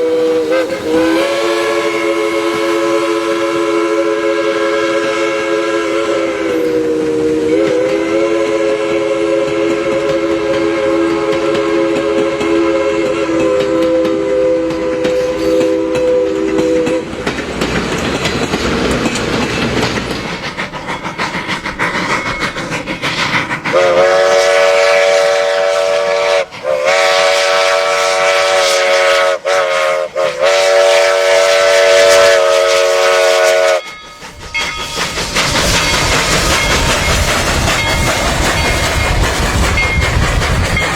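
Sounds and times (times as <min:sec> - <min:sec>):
train horn chord: 0:00.0 - 0:17.1, 0:23.8 - 0:33.9
train rumbling on tracks: 0:00.0 - 0:40.9.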